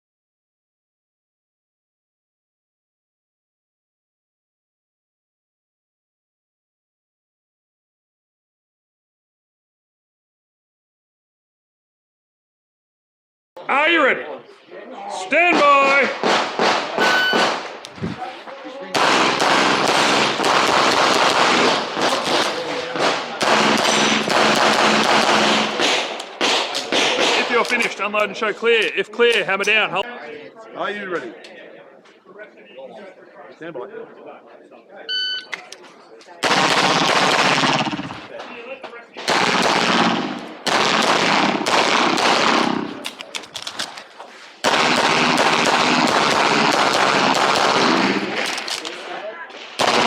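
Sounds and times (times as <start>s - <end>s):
rapid pistol fire: 15.5s - 17.8s, 18.9s - 27.9s, 36.4s - 38.4s, 39.2s - 43.0s, 44.6s - 48.9s, 49.7s - 50.0s.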